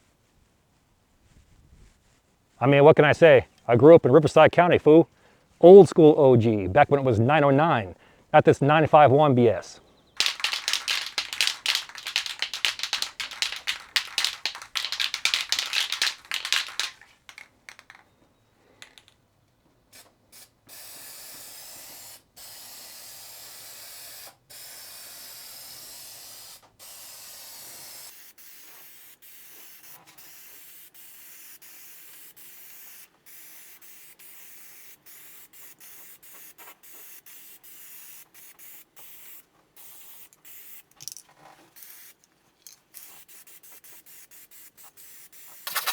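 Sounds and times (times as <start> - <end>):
aerosol spray can hissing: 10.2 - 18.0, 43.0 - 45.9
wire brush scrubbing steel: 45.7 - 45.9.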